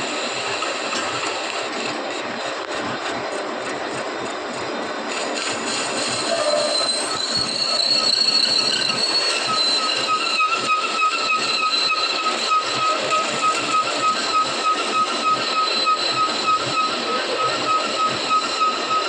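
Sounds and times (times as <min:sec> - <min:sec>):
metal-cutting machine squealing: 0:04.5 - 0:19.0.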